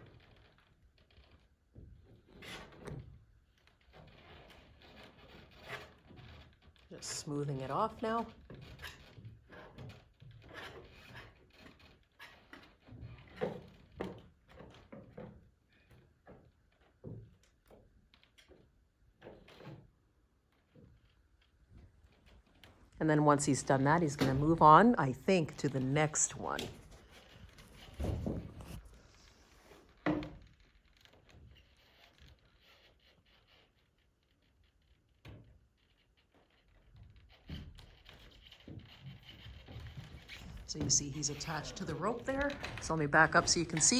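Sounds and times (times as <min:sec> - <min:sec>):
faint scrapes and ticks: 0:00.0 - 0:43.9
brush scraping and rubbing: 0:26.7 - 0:30.0, 0:39.1 - 0:43.9.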